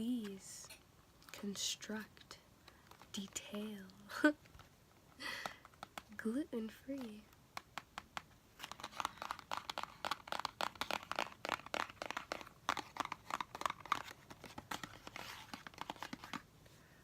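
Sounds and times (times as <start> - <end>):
play compound crackling when squeezed: 7.0 - 16.4.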